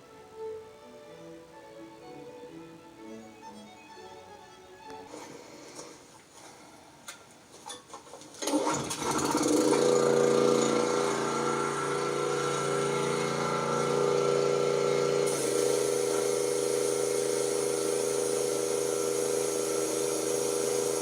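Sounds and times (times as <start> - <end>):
small gasoline engine running: 8.4 - 21.0.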